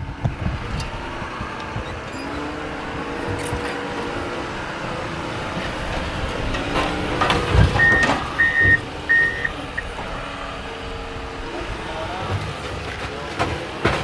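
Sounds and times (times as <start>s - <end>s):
heavy equipment engine running: 0.0s - 14.0s
backup alarm beeps: 7.6s - 9.9s.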